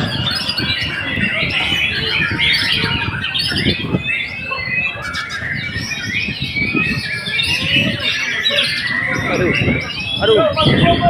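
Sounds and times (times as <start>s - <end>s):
bird singing whistles and chatter: 0.0s - 11.0s.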